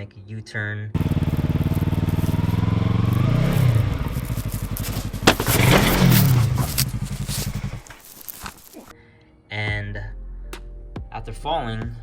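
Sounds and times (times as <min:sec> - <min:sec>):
motorcycle engine idling and revving: 0:01.0 - 0:08.9.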